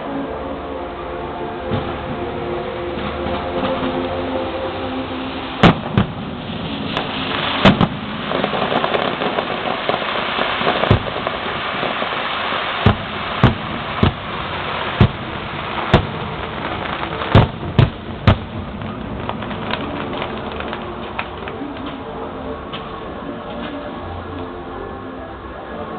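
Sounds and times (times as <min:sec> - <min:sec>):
fireworks crackling: 0:01.6 - 0:25.9
firework shells bursting: 0:05.6 - 0:21.4.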